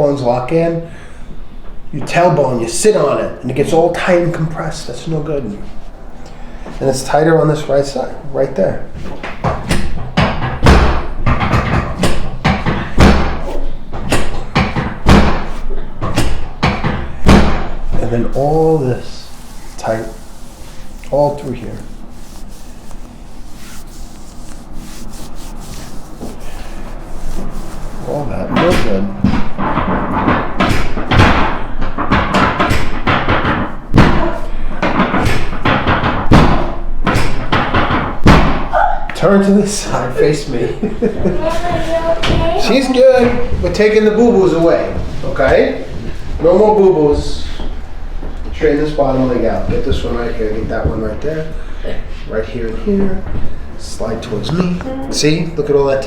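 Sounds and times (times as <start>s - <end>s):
heavy thuds of chiropractic thrusts: 9.0s - 38.7s
dull thumps and knocks: 9.1s - 38.7s.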